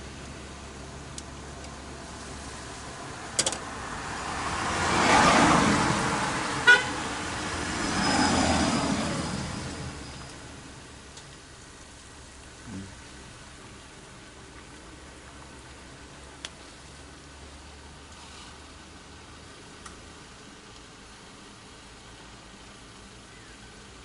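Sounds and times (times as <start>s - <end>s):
road vehicles passing: 0.0s - 24.0s
short horn toot: 6.6s - 7.1s.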